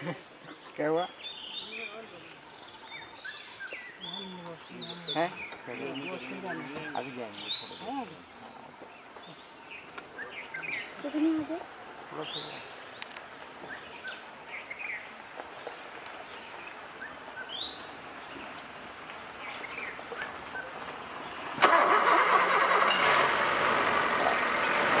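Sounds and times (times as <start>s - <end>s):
birds calling and chirping: 0.0s - 25.0s
vehicle engine starting and running: 21.3s - 25.0s.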